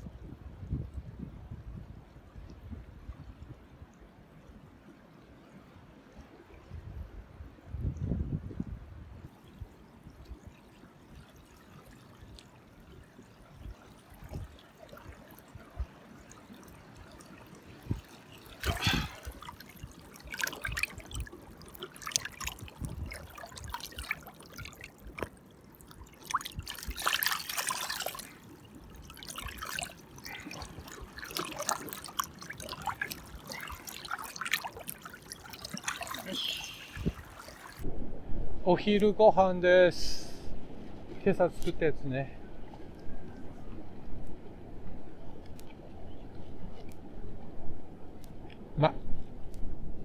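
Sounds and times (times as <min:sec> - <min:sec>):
small waves washing up shore: 0:09.3 - 0:37.9.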